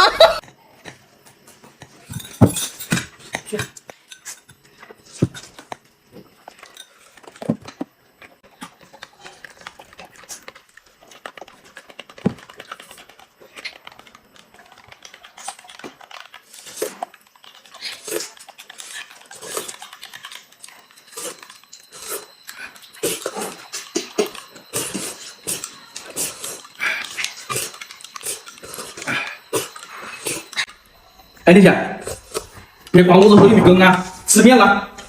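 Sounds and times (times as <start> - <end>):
dishes and cutlery clinking: 1.7 - 5.7.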